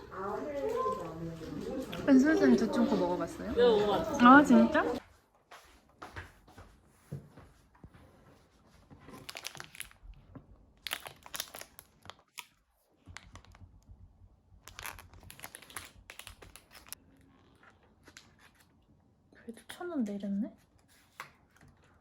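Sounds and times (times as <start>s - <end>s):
plastic wrapper tearing and crinkling: 9.1s - 10.1s, 10.7s - 13.8s, 14.6s - 17.0s.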